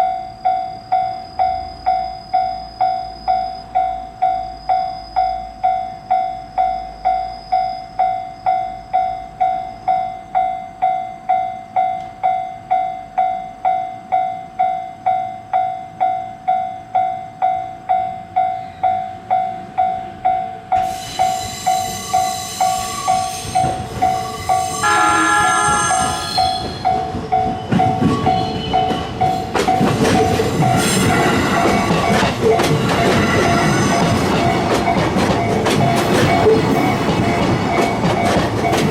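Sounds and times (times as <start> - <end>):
railroad crossing bell ringing: 0.0 - 38.9
train horn: 24.6 - 26.7
train wheels clattering over rail joints: 25.6 - 38.9.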